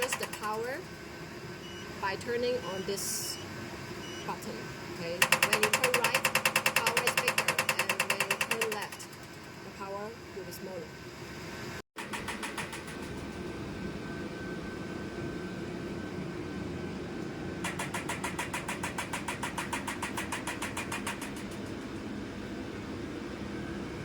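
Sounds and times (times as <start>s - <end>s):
machine hum: 0.0s - 24.0s
rapid even clicks: 17.6s - 22.1s.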